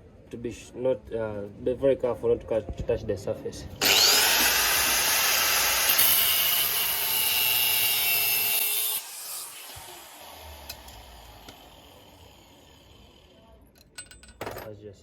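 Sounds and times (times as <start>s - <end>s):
angle grinder grinding metal: 3.8s - 14.0s.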